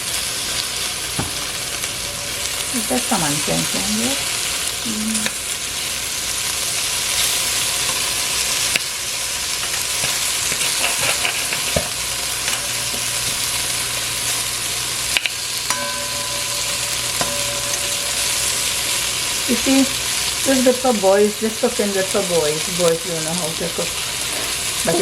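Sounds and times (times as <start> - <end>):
okra sizzling in oil: 0.0 - 25.0
spoon scraping a pot: 10.5 - 14.4.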